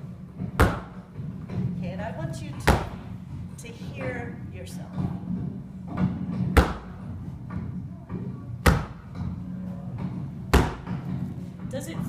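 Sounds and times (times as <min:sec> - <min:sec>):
hand slapping a mat: 0:00.4 - 0:01.1, 0:06.5 - 0:07.0, 0:08.6 - 0:09.3, 0:10.5 - 0:11.2.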